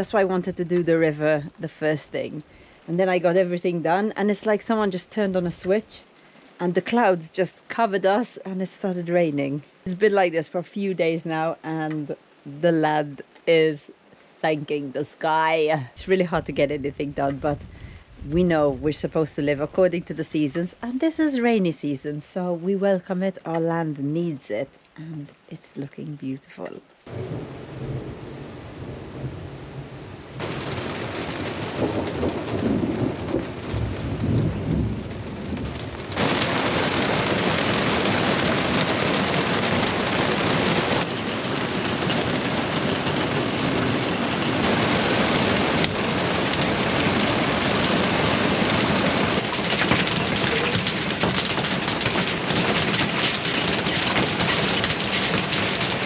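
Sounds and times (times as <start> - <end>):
heavy rain pouring: 0.0 - 13.3, 27.0 - 56.0.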